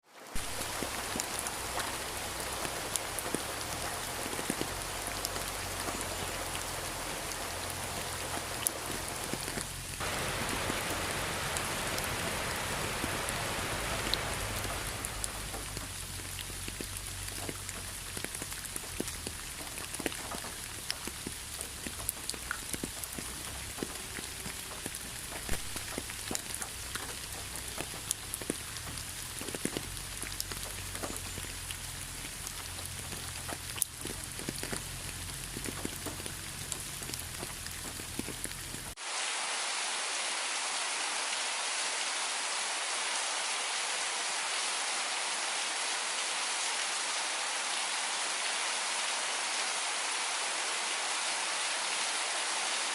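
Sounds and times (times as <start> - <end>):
rain falling: 0.0 - 52.9
drops ticking on a surface: 14.1 - 39.0.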